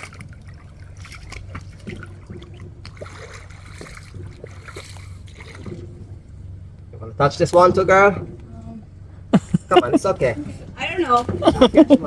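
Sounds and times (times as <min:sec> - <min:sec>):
small water splashes: 0:00.0 - 0:06.3
water trickling and lapping: 0:00.0 - 0:06.9.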